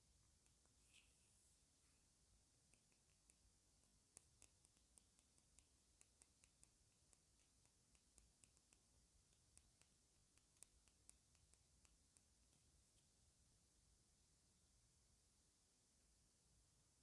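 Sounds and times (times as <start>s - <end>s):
faint keyboard typing clicks: 2.6s - 13.1s.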